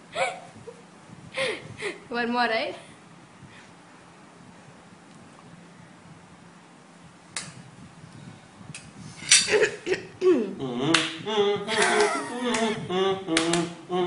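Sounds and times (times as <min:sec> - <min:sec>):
garbled singing with full mouth: 0:10.1 - 0:14.0.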